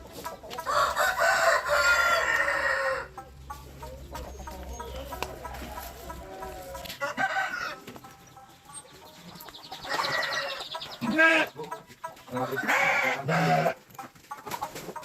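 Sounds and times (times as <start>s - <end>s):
chickens clucking: 0.0s - 15.0s
rooster crowing: 0.7s - 3.1s, 5.9s - 7.8s.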